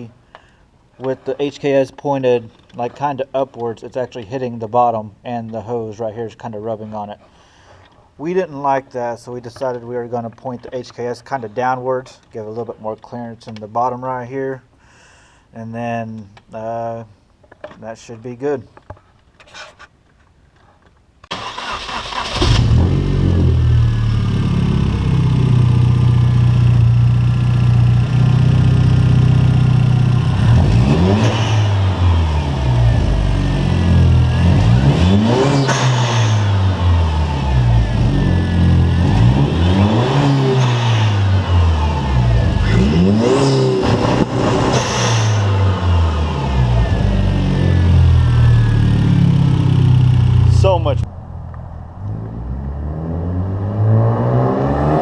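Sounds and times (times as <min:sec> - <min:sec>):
car engine starting and revving: 0:21.3 - 0:55.0.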